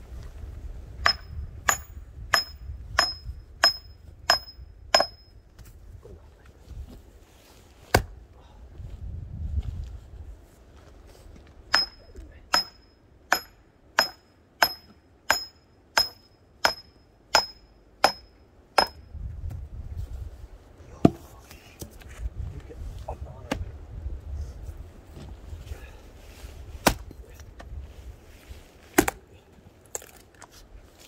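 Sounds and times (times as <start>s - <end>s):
hammer striking metal: 1.0s - 5.3s, 11.7s - 19.0s.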